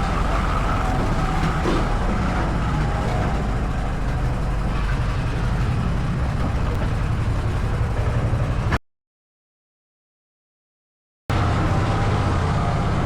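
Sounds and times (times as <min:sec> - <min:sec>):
atv engine rumbling: 0:00.0 - 0:08.8.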